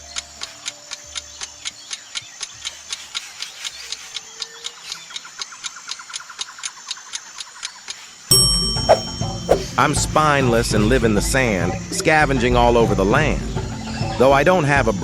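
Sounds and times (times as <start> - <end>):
fast faint clicks: 0.1 - 8.2.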